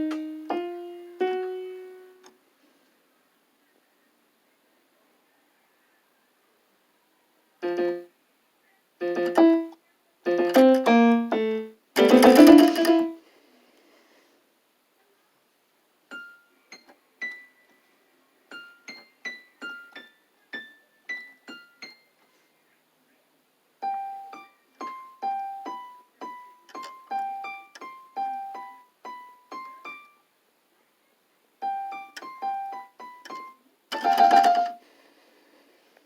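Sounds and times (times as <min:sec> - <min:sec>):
electronic keyboard piano notes: 0:00.0 - 0:02.2, 0:07.6 - 0:08.1, 0:09.0 - 0:09.7, 0:10.3 - 0:13.2, 0:31.6 - 0:34.8.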